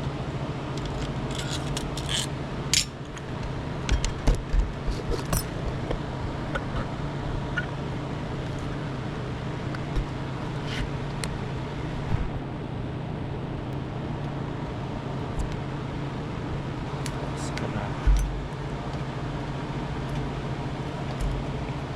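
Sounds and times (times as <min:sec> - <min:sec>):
low mechanical hum: 0:00.0 - 0:21.9
tools clicking on metal: 0:00.8 - 0:03.0.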